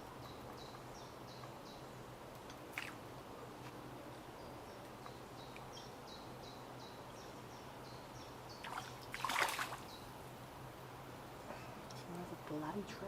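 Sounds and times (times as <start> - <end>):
small songbird singing: 0.0 - 2.2, 4.3 - 10.2.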